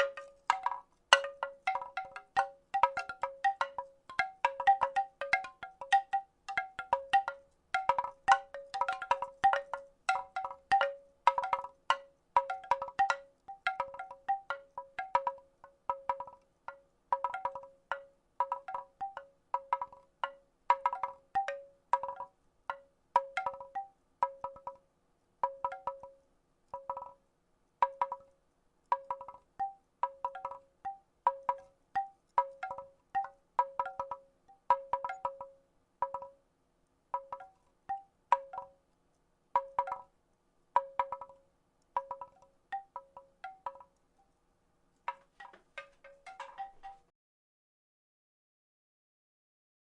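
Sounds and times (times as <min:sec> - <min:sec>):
wooden rattle clacking: 0:00.0 - 0:24.8, 0:45.1 - 0:47.1.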